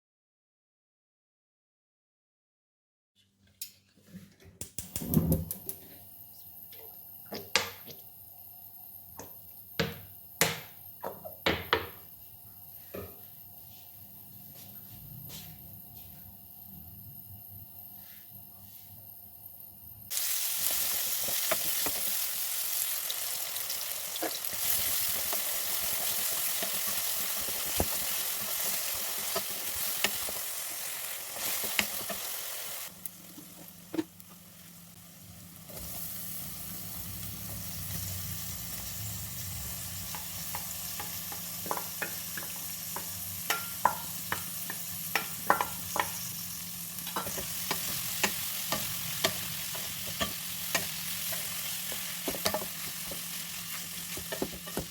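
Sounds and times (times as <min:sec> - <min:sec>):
food sizzling in frying pan: 0:05.2 - 0:54.9
utensil tapping on pan: 0:09.2 - 0:12.0, 0:40.1 - 0:46.3.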